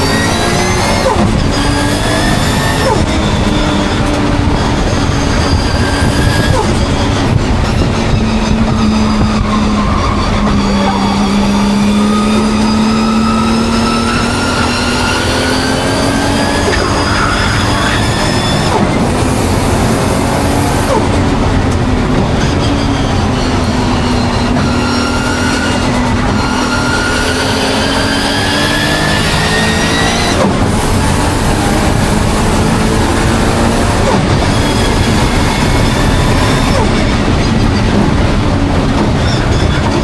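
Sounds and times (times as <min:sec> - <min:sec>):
misfiring car engine revving: 0:00.0 - 0:40.0.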